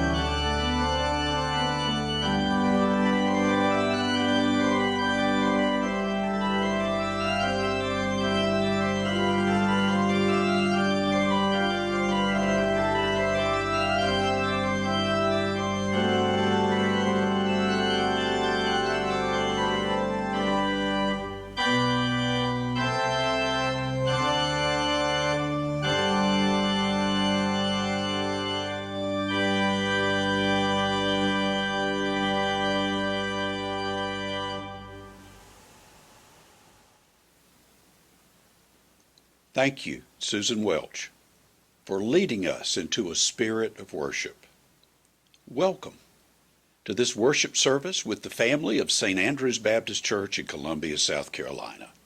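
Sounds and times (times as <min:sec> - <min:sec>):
organ playing slow chords: 0:00.0 - 0:37.1.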